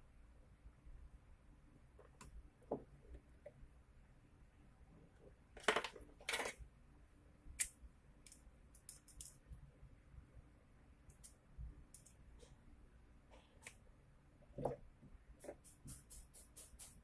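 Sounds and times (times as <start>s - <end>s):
small parts clicking: 7.6s - 9.4s, 11.1s - 12.2s.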